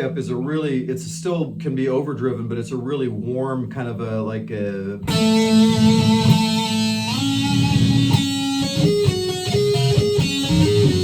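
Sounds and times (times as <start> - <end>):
electric guitar playing: 5.0 - 11.0.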